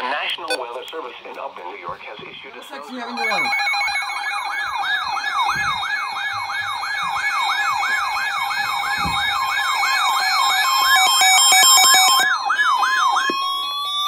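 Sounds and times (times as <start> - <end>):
stepping beep tone: 3.0 - 14.0
yelping emergency alert tone: 3.0 - 14.0.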